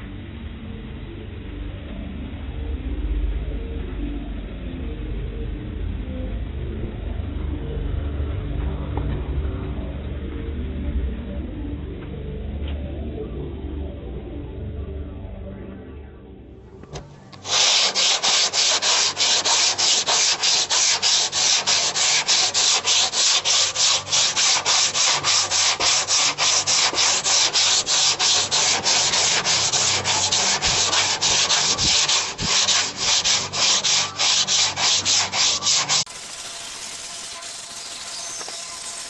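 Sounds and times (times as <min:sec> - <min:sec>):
sandpaper rubbing on bumper: 0:17.4 - 0:39.0.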